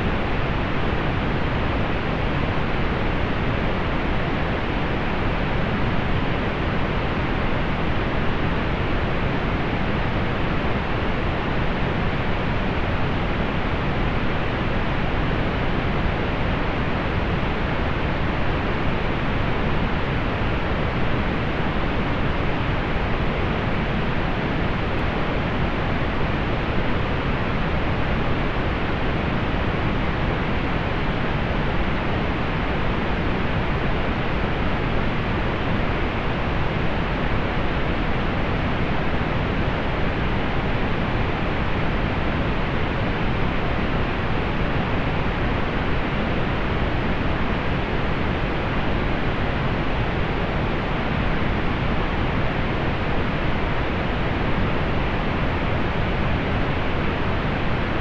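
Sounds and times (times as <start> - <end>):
pink noise hiss: 0.0 - 58.0.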